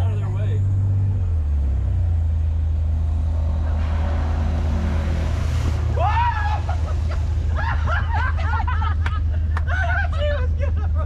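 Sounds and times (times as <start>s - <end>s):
vehicle engine droning: 0.0s - 11.0s.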